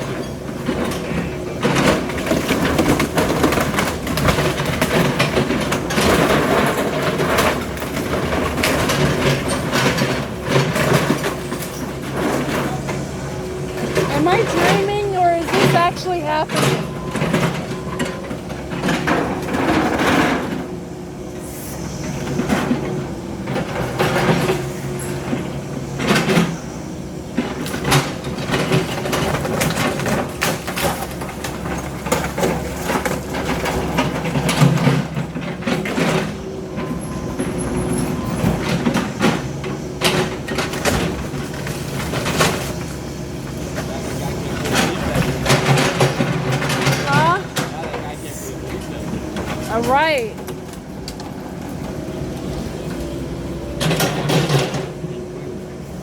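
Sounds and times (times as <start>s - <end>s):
heavy demolition machinery running: 0.0s - 56.0s
debris cracking and crashing: 1.6s - 12.7s.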